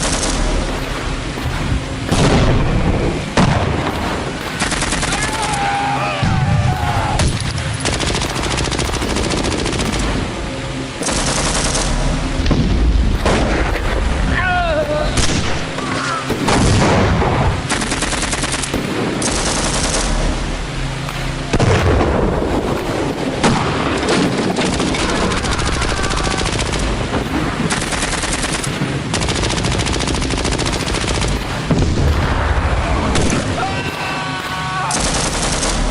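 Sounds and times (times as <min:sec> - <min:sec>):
machine-gun bursts: 0:00.0 - 0:02.6, 0:03.2 - 0:05.7, 0:06.8 - 0:12.3, 0:17.6 - 0:32.4, 0:33.1 - 0:35.9
booms: 0:00.0 - 0:05.5, 0:12.4 - 0:17.8, 0:21.4 - 0:35.9
single gunshots: 0:00.0 - 0:05.6, 0:11.0 - 0:14.1, 0:14.8 - 0:20.4, 0:26.6 - 0:35.9.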